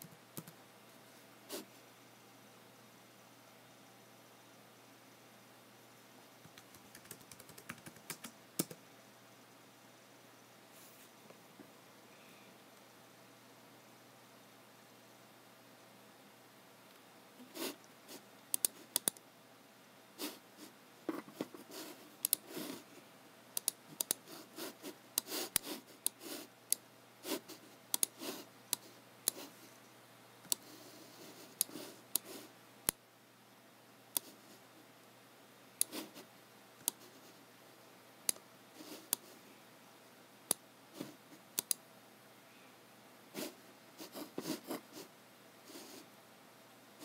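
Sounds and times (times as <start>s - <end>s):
mouse clicks: 18.5s - 19.2s, 22.2s - 22.4s, 23.6s - 24.2s, 27.9s - 29.4s, 30.4s - 30.7s, 41.6s - 41.8s.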